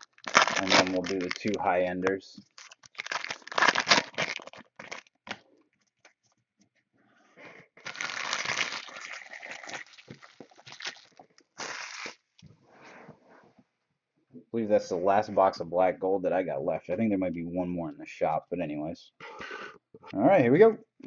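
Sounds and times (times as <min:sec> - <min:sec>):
plastic wrapping torn and crinkled: 0:00.0 - 0:05.5, 0:07.8 - 0:12.4.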